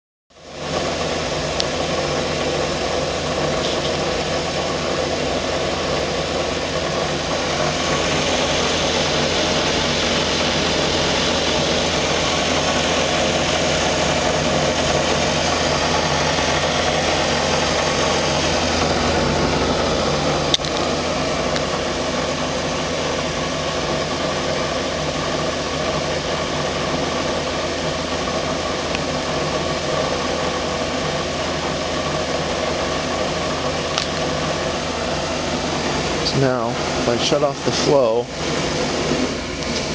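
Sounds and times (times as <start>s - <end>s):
water heater mechanical drone: 0.3s - 39.9s
sharp click: 20.5s - 20.9s, 33.9s - 34.3s.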